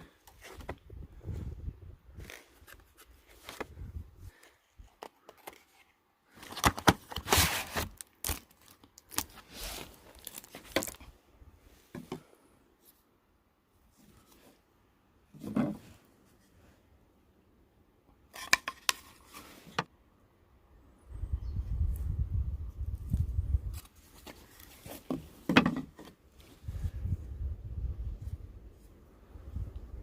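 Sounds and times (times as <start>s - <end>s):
packaging tearing and crinkling: 6.4s - 11.0s.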